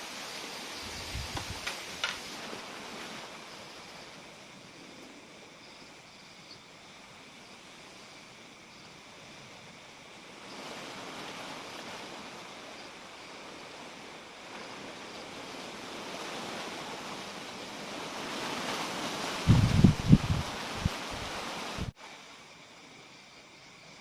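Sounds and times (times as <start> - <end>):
wind rushing: 0.8 - 2.0, 15.3 - 22.0.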